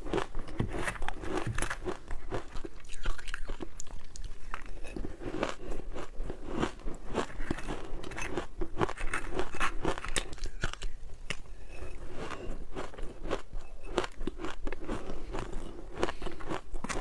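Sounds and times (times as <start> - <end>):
frost being chewed crunching: 0.0 - 17.0.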